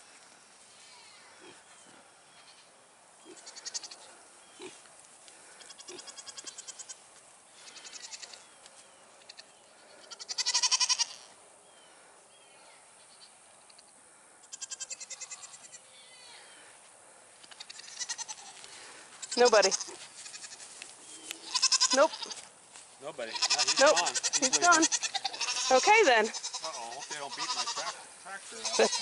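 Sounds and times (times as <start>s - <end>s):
goats calling: 1.3s - 4.8s, 5.4s - 11.4s, 17.4s - 22.5s, 23.1s - 29.0s.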